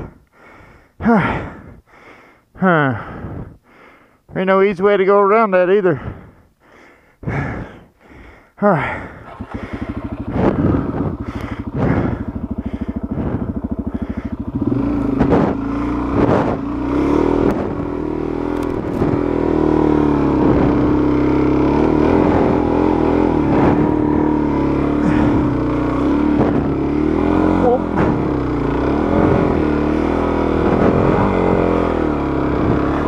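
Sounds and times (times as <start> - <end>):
motorcycle engine chugging: 8.8 - 33.0
motorcycle knocks and clatters: 26.3 - 26.8, 27.8 - 28.6.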